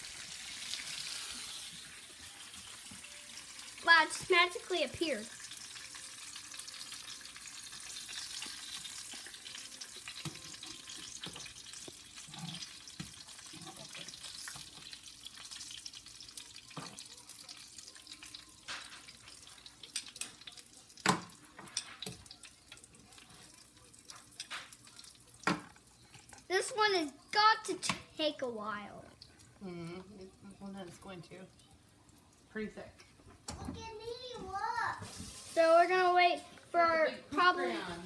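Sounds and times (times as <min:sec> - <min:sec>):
hot oil sizzling in a pan: 0:00.0 - 0:28.6, 0:34.5 - 0:36.8.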